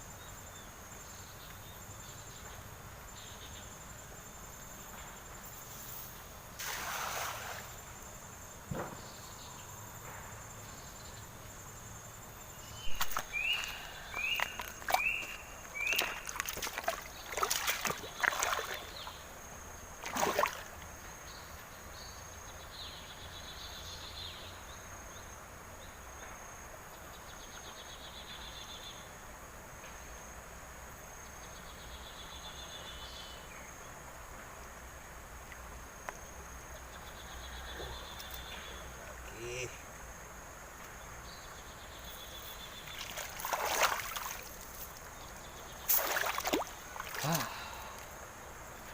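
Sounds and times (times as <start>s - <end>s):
insect chorus hum: 0.0s - 48.9s
loud rustling knocks: 8.7s - 9.1s
buzzy insect trills: 35.9s - 48.9s.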